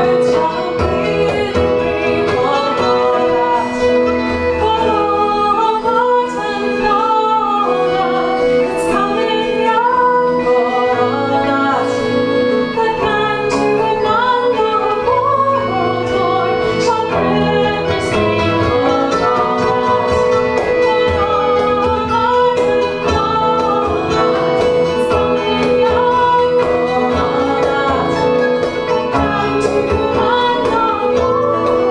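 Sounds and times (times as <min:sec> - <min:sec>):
wavering melody: 0:00.0 - 0:31.9.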